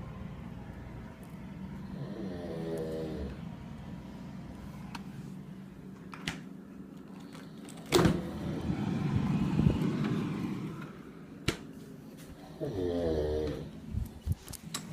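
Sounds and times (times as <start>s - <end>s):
man snoring loudly: 1.9s - 3.4s, 12.5s - 13.7s.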